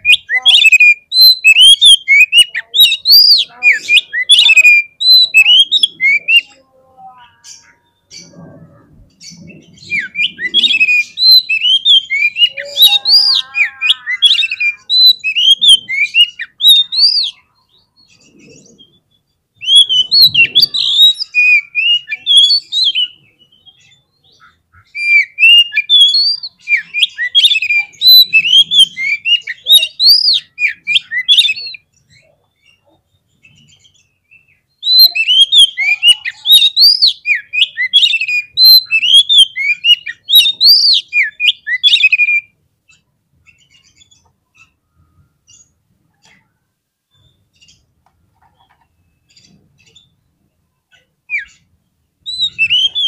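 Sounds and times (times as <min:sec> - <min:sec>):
magpie-robin singing: 0:00.0 - 0:46.5, 0:47.1 - 0:53.0.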